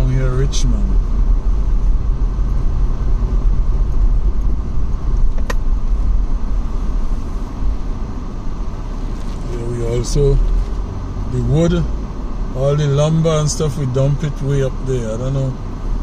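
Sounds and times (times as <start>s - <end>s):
vehicle engine and road rumble: 0.0s - 16.0s
sharp click: 5.3s - 5.6s.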